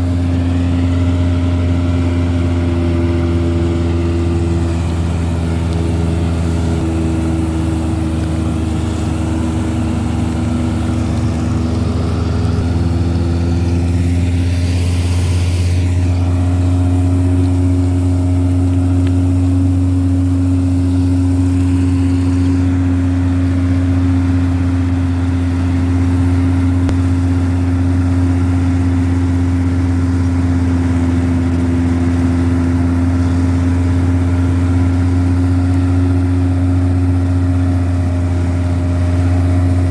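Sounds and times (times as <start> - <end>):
harvester engine humming: 0.0 - 39.9
short rushing hiss: 8.3 - 18.3, 20.0 - 23.4.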